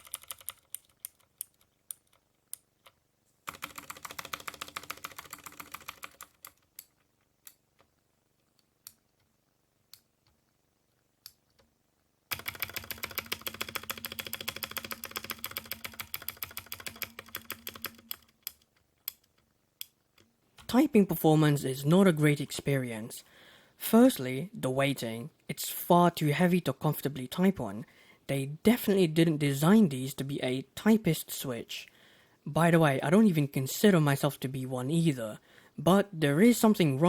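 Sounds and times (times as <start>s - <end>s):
mechanical keyboard typing: 0.0s - 7.9s, 12.3s - 19.4s.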